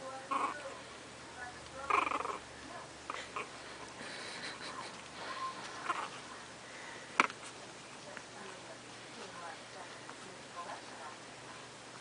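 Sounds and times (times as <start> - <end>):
snuffling: 3.1 - 10.4.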